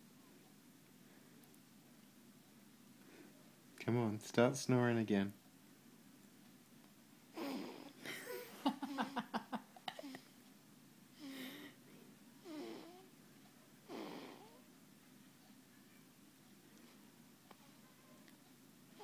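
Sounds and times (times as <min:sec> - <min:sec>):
baby snoring: 0:07.3 - 0:08.0, 0:12.4 - 0:13.1, 0:13.9 - 0:14.6.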